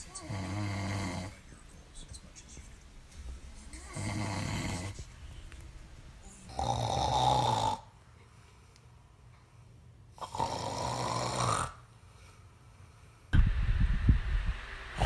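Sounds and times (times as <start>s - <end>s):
quiet breaths: 0.0s - 13.4s
man snoring: 0.2s - 1.4s, 3.9s - 5.0s, 6.5s - 7.9s, 10.2s - 11.9s
low thumps: 13.4s - 15.0s.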